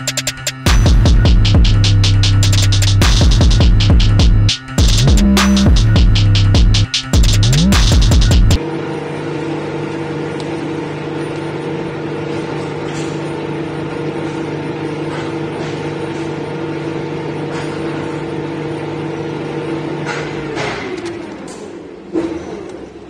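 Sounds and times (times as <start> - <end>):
lathe humming: 3.6 - 22.0.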